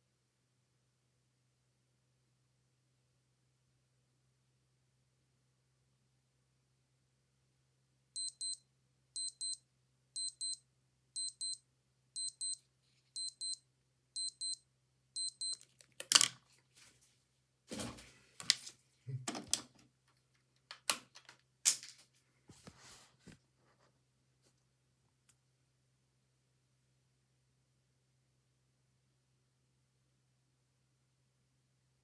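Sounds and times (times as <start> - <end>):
digital watch alarm beeping: 8.2 - 8.6, 9.2 - 9.6, 10.2 - 10.6, 11.2 - 11.6, 12.2 - 12.6, 13.2 - 13.6, 14.2 - 14.6, 15.2 - 15.6.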